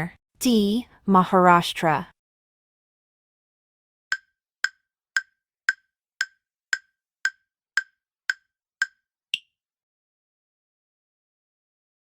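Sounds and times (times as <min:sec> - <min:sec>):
wooden-sounding timer ticks: 0:04.1 - 0:09.5.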